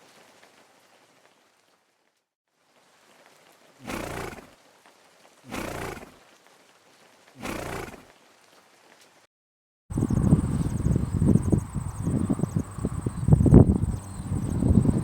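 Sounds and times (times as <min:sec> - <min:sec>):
horse calls: 0:03.8 - 0:04.6, 0:05.5 - 0:06.2, 0:07.4 - 0:08.1.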